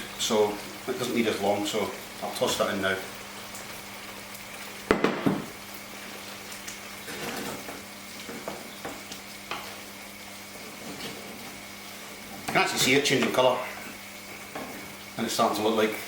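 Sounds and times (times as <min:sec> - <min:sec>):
sauce sizzling in a pan: 0:00.0 - 0:16.0
utensil knocking on pan: 0:04.9 - 0:05.5
utensil scraping pan: 0:10.6 - 0:11.6.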